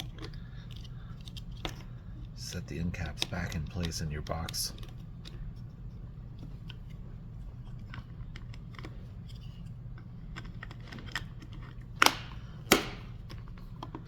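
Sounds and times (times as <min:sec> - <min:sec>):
plastic parts clicking and tapping: 0:02.9 - 0:05.4.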